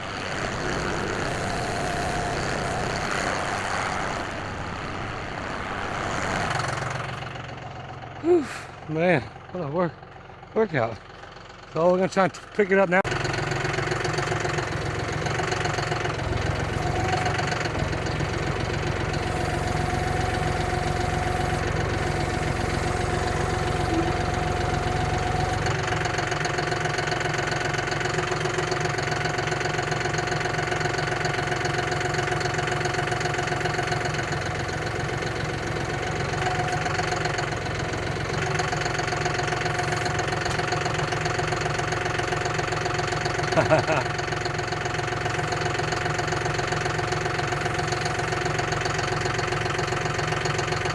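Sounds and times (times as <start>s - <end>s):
machine engine droning hum: 0.0s - 26.4s, 32.6s - 44.1s.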